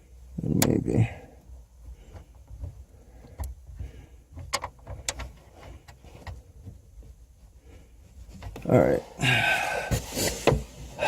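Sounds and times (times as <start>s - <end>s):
light clicks and knocks: 1.4s - 8.8s.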